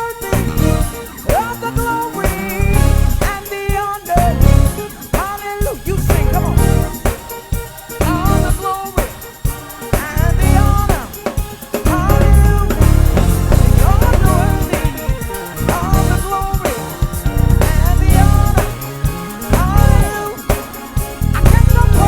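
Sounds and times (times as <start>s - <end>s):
drum kit: 0.0s - 22.0s
guitar: 0.0s - 22.0s
organ: 0.0s - 22.0s
saxophone: 0.0s - 22.0s
electric bass: 0.4s - 0.9s, 2.6s - 3.3s, 4.2s - 4.7s, 5.9s - 7.0s, 10.2s - 10.9s, 11.9s - 14.7s, 15.6s - 16.3s, 17.4s - 18.7s, 19.6s - 20.1s, 21.2s - 22.0s.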